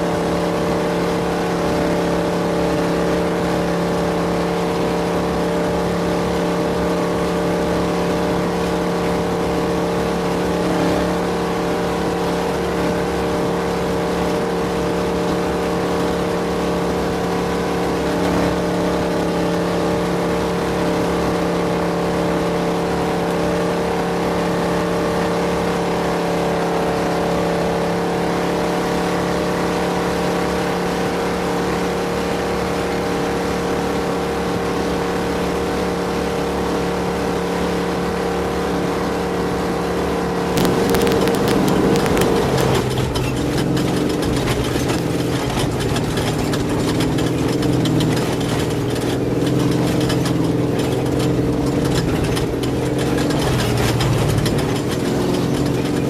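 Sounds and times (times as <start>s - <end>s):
race vehicle engine running hard: 0.0s - 56.0s
constant rushing noise: 40.6s - 56.0s.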